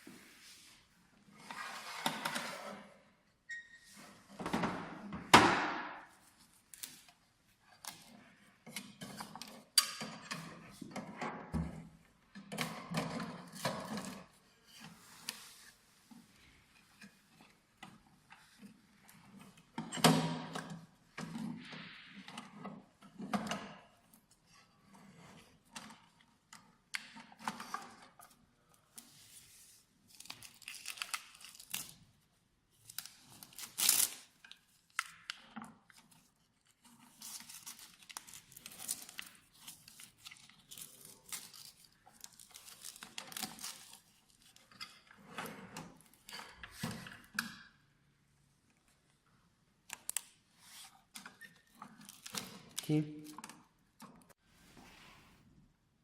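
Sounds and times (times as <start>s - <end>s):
packaging tearing and crinkling: 30.1s - 32.0s, 32.8s - 34.3s, 37.2s - 44.6s.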